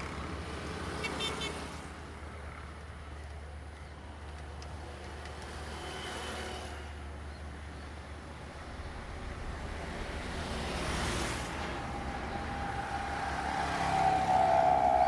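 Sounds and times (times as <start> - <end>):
diesel train approaching: 8.4 - 15.0.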